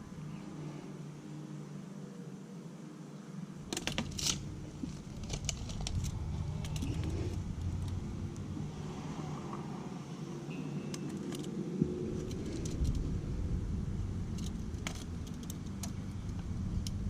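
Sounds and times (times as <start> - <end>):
steady low hum: 0.0 - 17.0
tools clicking and rattling: 3.7 - 8.0, 12.2 - 13.0, 14.3 - 16.4.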